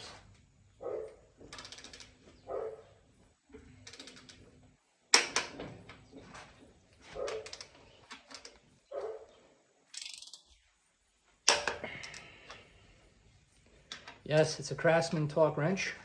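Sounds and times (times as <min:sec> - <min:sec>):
dog barking: 0:00.8 - 0:01.2, 0:02.5 - 0:02.9, 0:07.2 - 0:07.4, 0:08.9 - 0:09.3.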